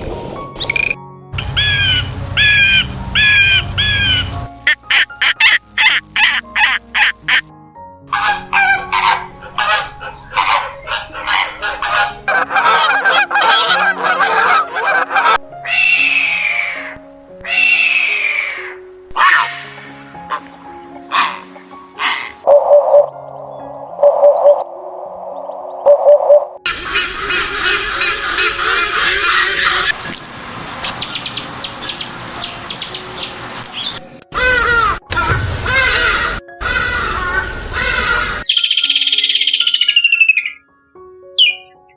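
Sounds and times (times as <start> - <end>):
poultry flock calling: 1.4 - 7.4, 8.1 - 16.9, 17.5 - 22.5, 26.7 - 30.0, 34.4 - 38.4
geese honking: 1.4 - 7.5, 8.1 - 22.4, 26.7 - 30.0, 34.3 - 38.4.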